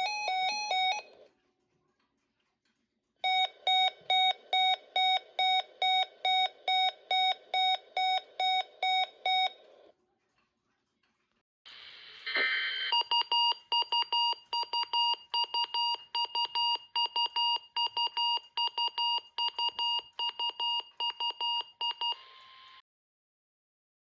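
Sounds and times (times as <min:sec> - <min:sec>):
radio hiss: 0:11.7 - 0:12.9.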